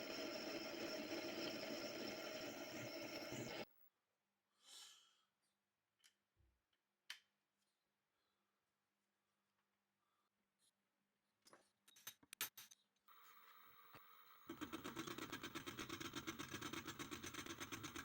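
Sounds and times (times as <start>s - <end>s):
workshop machine whining: 0.0s - 3.6s.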